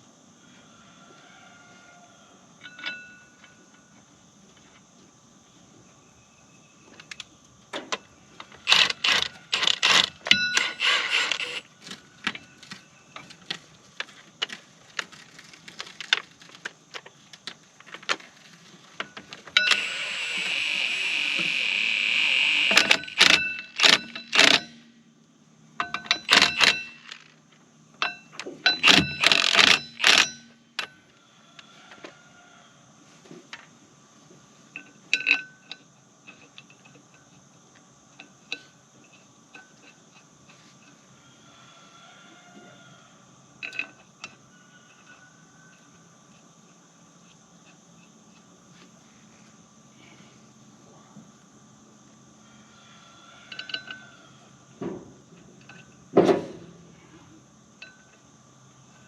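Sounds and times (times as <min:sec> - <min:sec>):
metal clanks and knocks: 0:28.0 - 0:30.9.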